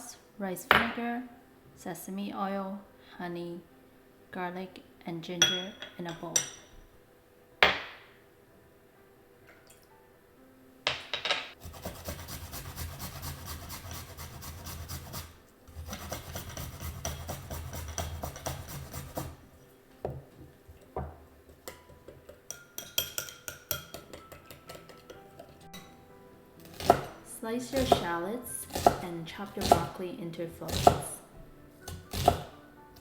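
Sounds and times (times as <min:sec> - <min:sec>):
utensil scraping: 0:11.6 - 0:19.4
utensil clinks and taps: 0:21.0 - 0:25.9.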